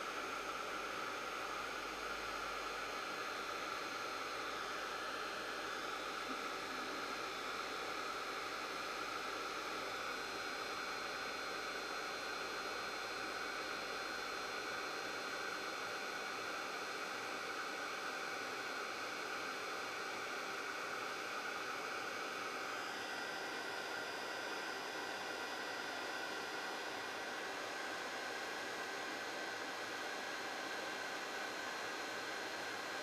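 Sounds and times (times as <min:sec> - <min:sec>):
hot-air blower rushing: 0:00.0 - 0:16.5
faint motor whine: 0:00.0 - 0:33.0.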